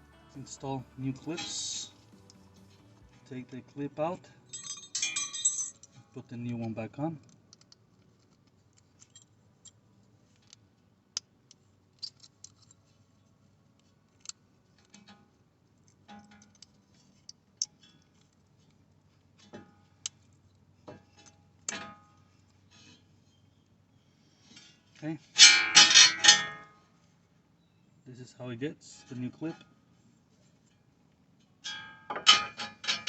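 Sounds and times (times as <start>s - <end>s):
ringing metallic clinks: 4.5s - 5.9s.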